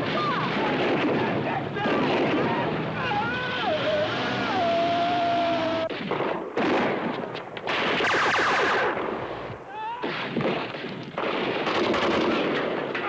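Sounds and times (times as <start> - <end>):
rapid gunfire: 0.0 - 2.7, 5.9 - 7.1, 7.7 - 9.3, 10.0 - 13.0.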